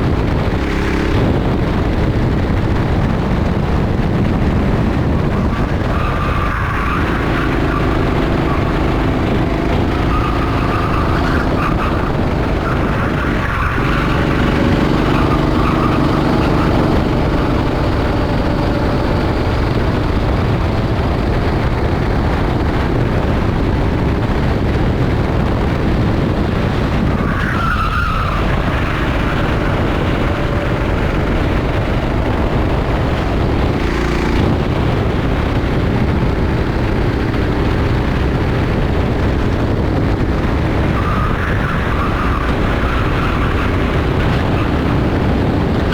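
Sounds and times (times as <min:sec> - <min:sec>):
go-kart engine running hard: 0:00.0 - 0:45.9
tyre squeal: 0:05.3 - 0:19.5, 0:27.0 - 0:34.1, 0:40.9 - 0:45.9.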